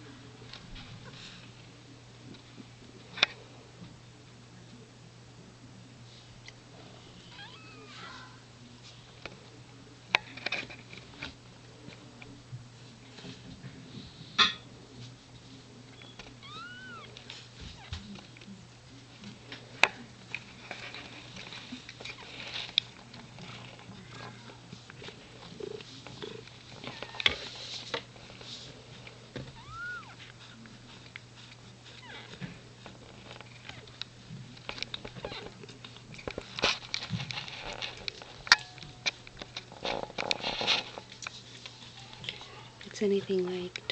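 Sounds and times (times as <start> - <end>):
steady low hum: 0.0 - 43.9
cat meow: 7.2 - 8.4, 16.4 - 17.1, 29.5 - 30.2
soft rustling and clicking: 14.9 - 43.9.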